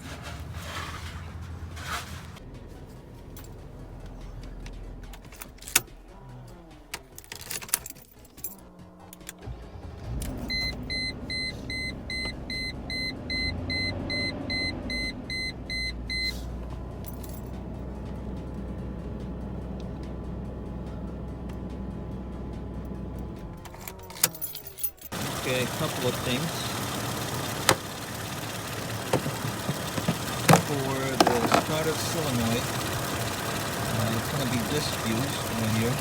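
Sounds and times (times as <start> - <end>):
car engine idling: 0.0 - 7.2, 9.4 - 23.8, 25.0 - 36.0
keys jangling in ignition: 5.1 - 6.0, 6.9 - 9.4, 17.0 - 17.6, 23.2 - 36.0
dashboard warning chime beeping: 10.5 - 16.4, 25.1 - 36.0.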